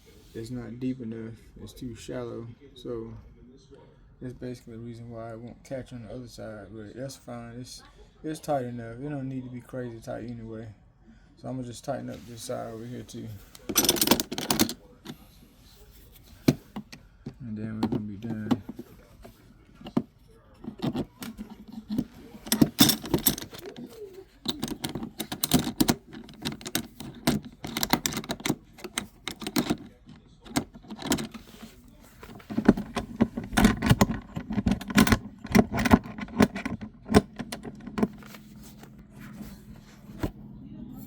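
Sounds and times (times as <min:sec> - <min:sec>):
metal tools clinking and rattling: 0:13.4 - 0:15.2, 0:20.6 - 0:38.7.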